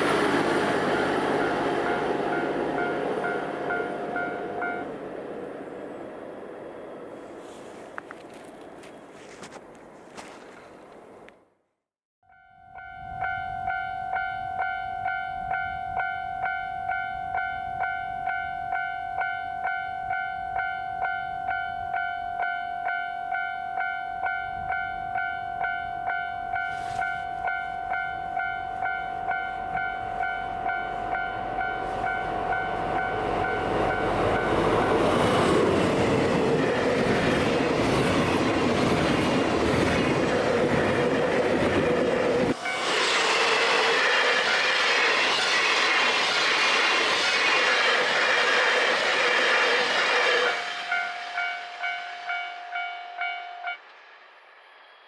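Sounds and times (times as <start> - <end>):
level-crossing warning bell: 0.0 - 5.0, 12.3 - 34.8, 50.8 - 53.8
train rumble and wheel noise: 0.0 - 11.4, 12.6 - 55.0.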